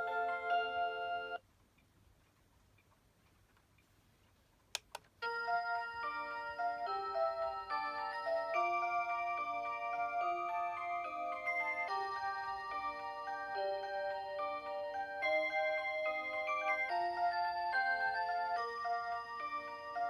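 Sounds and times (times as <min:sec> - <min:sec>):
alarm clock chiming tune: 0:00.0 - 0:01.4, 0:05.2 - 0:20.0
quick clicks: 0:04.6 - 0:05.2.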